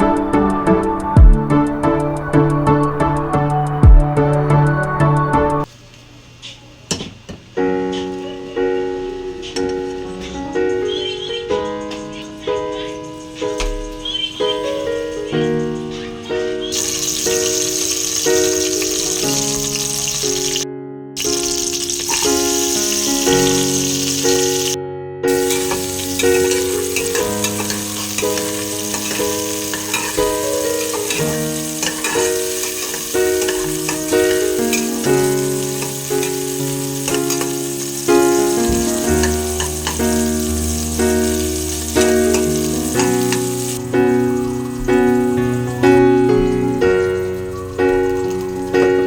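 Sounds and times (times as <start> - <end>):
background piano music: 0.0 - 5.7, 7.5 - 49.0
food sizzling in a pan: 16.7 - 20.6, 21.2 - 45.5, 46.7 - 49.0.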